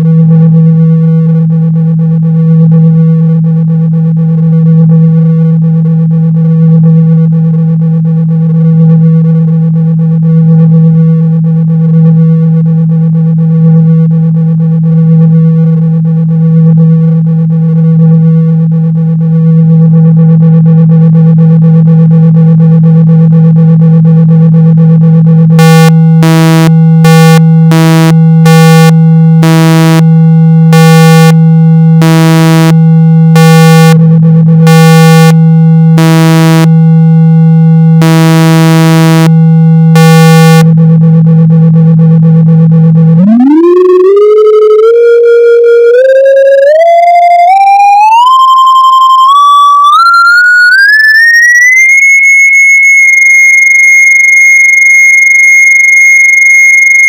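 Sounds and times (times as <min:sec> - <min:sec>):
low hum with buzzy pulses: 0:00.0 - 0:50.4
rising tone to high whistle: 0:43.2 - 0:53.4.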